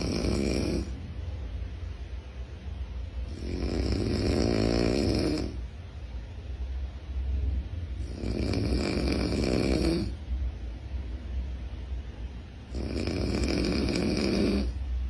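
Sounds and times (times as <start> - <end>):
loud snoring: 0.0 - 1.0, 3.3 - 5.6, 8.0 - 10.2, 12.7 - 14.8
quiet breathing: 0.0 - 1.4, 7.2 - 10.5, 12.6 - 15.0.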